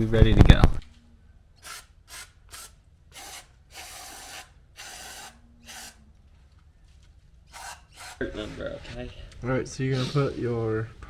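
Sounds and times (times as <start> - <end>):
aerosol spray can hissing: 1.6 - 6.0, 7.5 - 8.2.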